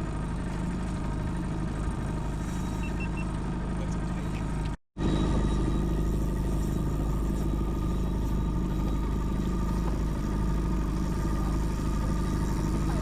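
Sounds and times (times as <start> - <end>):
outboard motor droning: 0.0 - 13.0.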